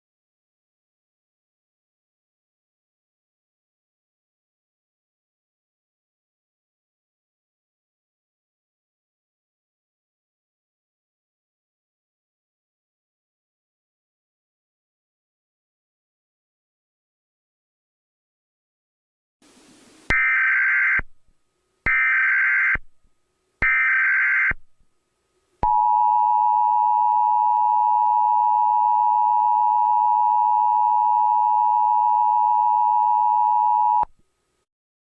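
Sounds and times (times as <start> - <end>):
faint hiss: 19.4 - 20.2
steady two-tone alarm: 20.1 - 21.1, 21.9 - 22.9, 23.6 - 24.6, 25.6 - 34.0.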